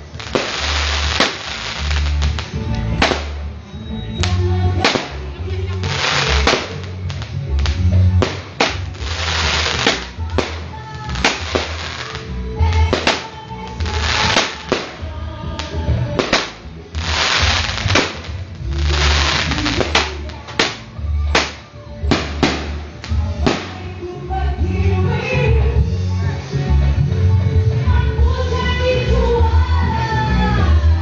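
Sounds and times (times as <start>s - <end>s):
fireworks bangs: 0.0s - 3.6s, 4.8s - 15.0s, 16.0s - 23.9s
hissing crackle of fireworks: 0.0s - 3.7s, 4.8s - 23.8s
music with low beat: 0.0s - 31.0s.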